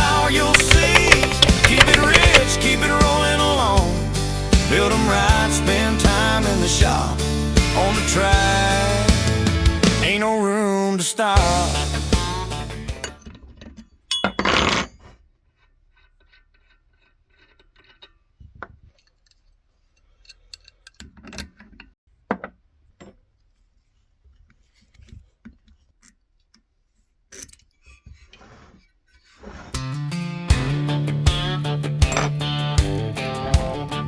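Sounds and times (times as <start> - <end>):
metal parts clinking: 0.5 - 2.5, 13.0 - 15.2, 16.4 - 22.0, 32.1 - 32.4.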